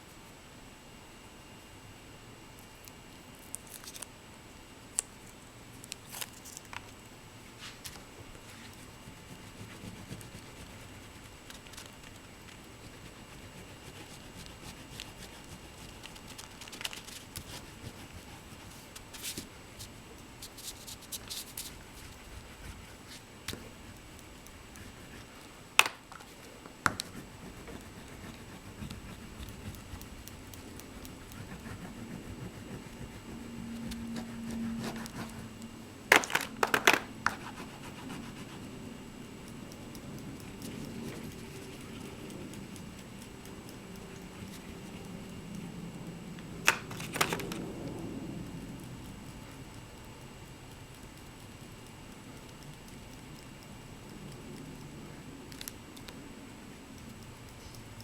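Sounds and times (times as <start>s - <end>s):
paper scratching and rustling: 7.6s - 24.0s, 26.2s - 38.8s, 46.6s - 47.6s.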